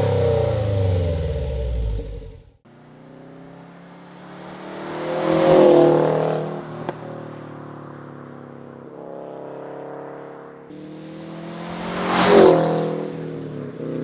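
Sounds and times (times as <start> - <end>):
car engine exhaust rumble: 0.0 - 2.6.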